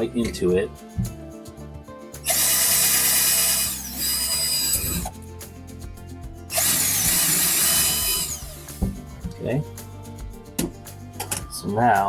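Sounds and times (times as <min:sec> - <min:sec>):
power drill drilling through metal: 0:02.3 - 0:05.1, 0:06.5 - 0:08.8.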